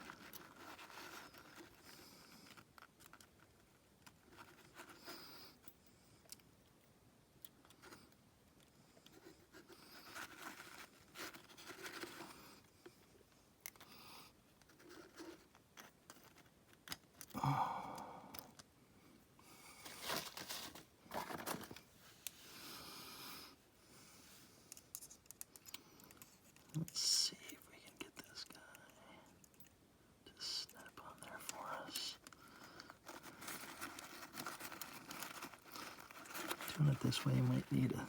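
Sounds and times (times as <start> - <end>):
rustling: 0.0 - 6.4, 9.0 - 13.9, 14.5 - 17.3, 19.5 - 22.8, 30.6 - 38.0.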